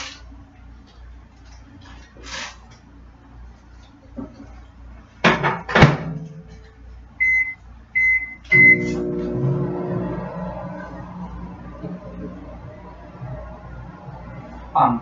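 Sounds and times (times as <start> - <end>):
microwave oven humming: 0.0 - 15.0
microwave short beeps: 7.2 - 9.1.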